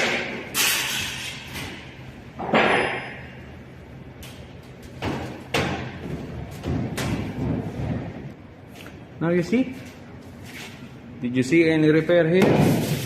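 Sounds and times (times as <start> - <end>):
heavy knocks of hard objects: 5.0 - 8.2.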